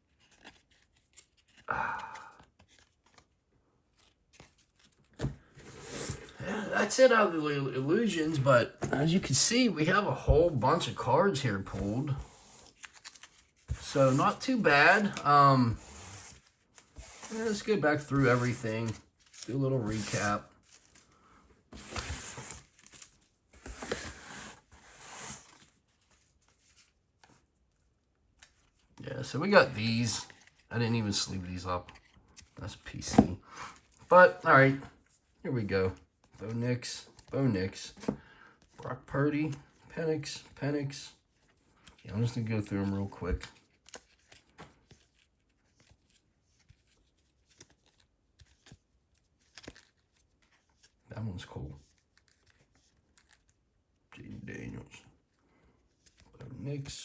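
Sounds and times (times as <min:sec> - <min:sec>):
trading cards rustling and scraping: 0:00.0 - 0:57.0.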